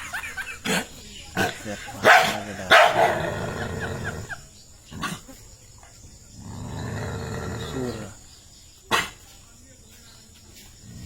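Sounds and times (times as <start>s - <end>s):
dog growling: 1.4s - 5.4s, 6.1s - 8.2s.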